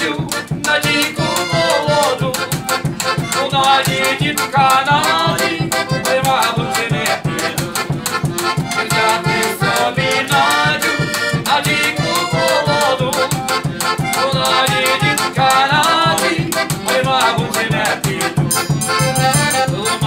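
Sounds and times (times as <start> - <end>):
accordion melody: 0.0 - 20.0
quick steady dance beat: 15.5 - 20.0.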